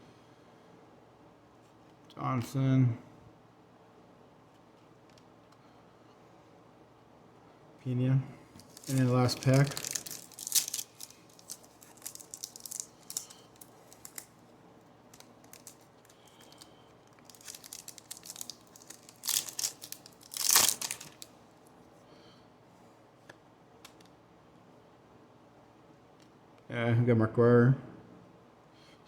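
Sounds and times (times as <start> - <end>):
foil wrapper ripping: 8.6 - 14.3, 15.1 - 21.3
foil wrapper crinkling: 8.6 - 14.4, 15.1 - 21.3.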